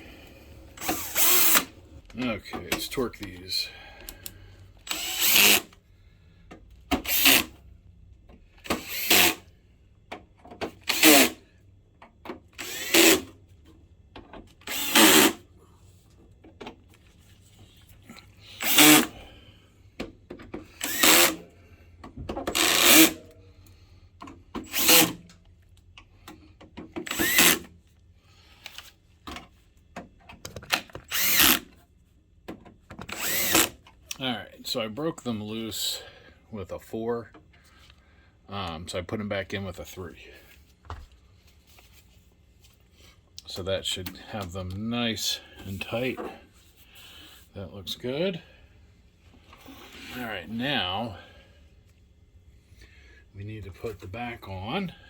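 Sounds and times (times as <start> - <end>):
electric screwdriver running: 0.8 - 1.7, 4.9 - 5.7, 7.1 - 7.5, 8.8 - 9.4, 10.9 - 11.4, 12.6 - 13.3, 14.7 - 15.4, 18.6 - 19.1, 20.8 - 21.4, 22.6 - 23.2, 24.7 - 25.2, 27.1 - 27.6, 31.1 - 31.6, 33.1 - 33.7.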